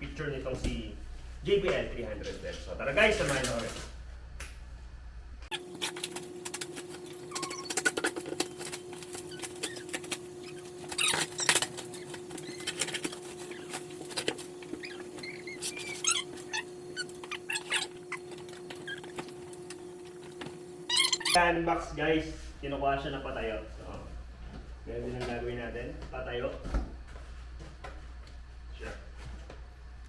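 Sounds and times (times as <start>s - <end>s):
steady hum: 0.0s - 30.0s
packaging clicks and rustles: 5.6s - 20.4s
short squeaks: 7.0s - 19.7s, 20.8s - 21.4s.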